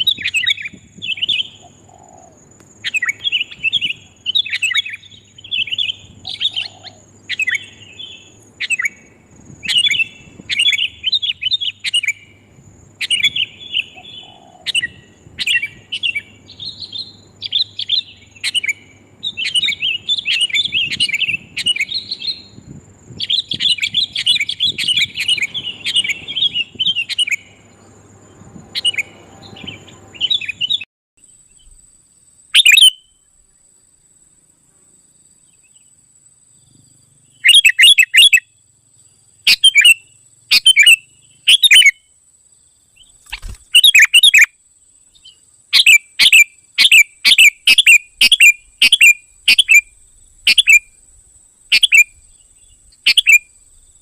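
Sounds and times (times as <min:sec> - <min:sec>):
bulbuls chattering calls: 0:00.1 - 0:27.8.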